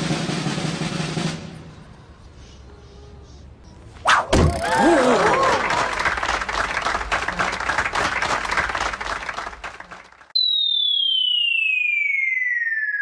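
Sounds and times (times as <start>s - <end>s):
electronic tone sliding down: 10.4s - 13.0s.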